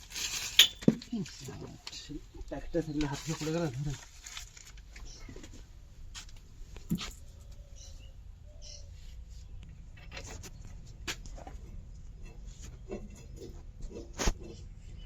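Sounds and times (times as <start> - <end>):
hand tools clicking and knocking: 0.1 - 2.0, 9.7 - 14.8.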